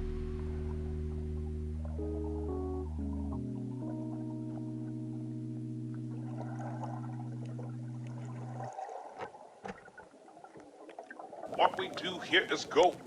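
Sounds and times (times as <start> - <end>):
background music sustained chord: 0.0 - 8.8
faint crackling: 0.0 - 13.0
gurgling water: 0.0 - 13.0.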